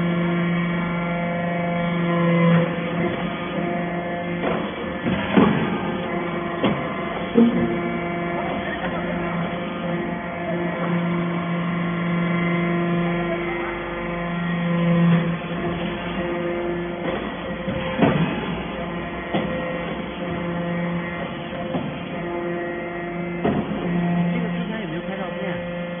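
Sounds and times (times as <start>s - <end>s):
motor and pump hum: 0.0s - 26.0s
sharp metallic knocks: 4.3s - 9.0s.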